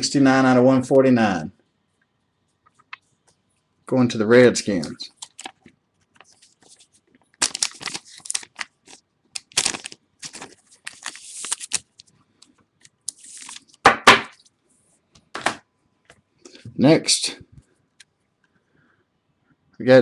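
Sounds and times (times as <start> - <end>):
card packaging rustling and crinkling: 4.7 - 14.5.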